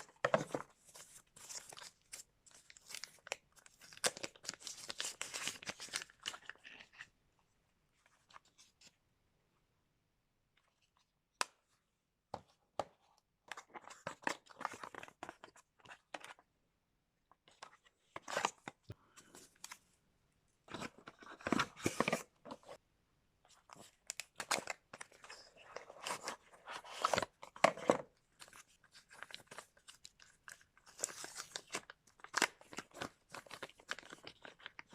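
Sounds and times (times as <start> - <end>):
packaging crinkling and tearing: 1.4 - 7.0, 28.4 - 34.9.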